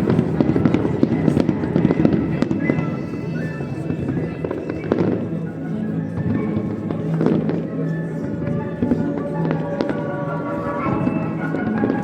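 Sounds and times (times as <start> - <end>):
fireworks bangs and crackle: 0.0 - 3.2, 3.9 - 5.3
music: 0.0 - 12.0.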